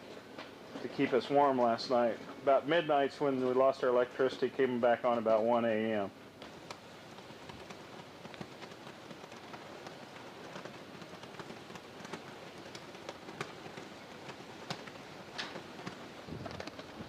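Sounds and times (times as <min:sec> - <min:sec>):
sharp crackles and clicks: 0:06.4 - 0:17.0.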